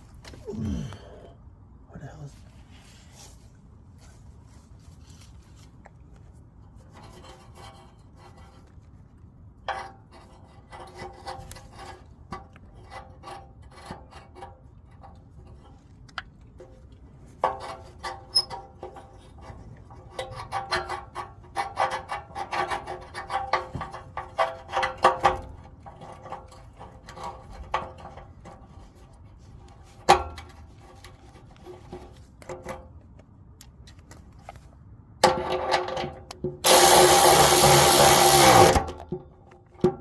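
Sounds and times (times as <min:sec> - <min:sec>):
power tool running: 0:36.6 - 0:38.9.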